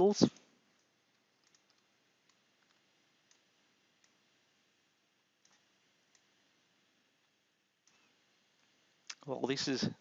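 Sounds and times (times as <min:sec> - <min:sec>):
faint computer mouse clicks: 0:00.3 - 0:04.2, 0:05.4 - 0:06.3, 0:07.8 - 0:09.2.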